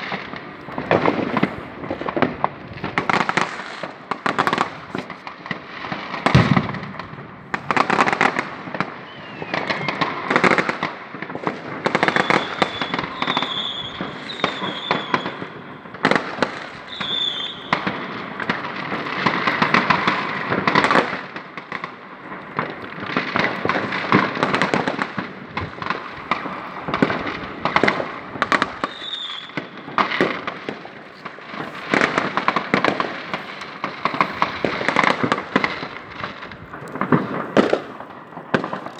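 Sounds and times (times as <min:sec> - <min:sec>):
firecracker bangs and crackling: 0:00.0 - 0:38.9
firework whistles: 0:07.4 - 0:21.3, 0:23.1 - 0:38.6.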